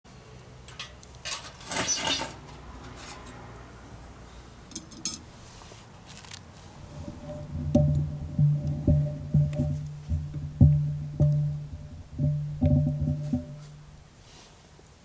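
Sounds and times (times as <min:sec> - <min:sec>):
metal cookware clattering: 0:00.7 - 0:03.4, 0:04.7 - 0:05.4, 0:06.8 - 0:14.1.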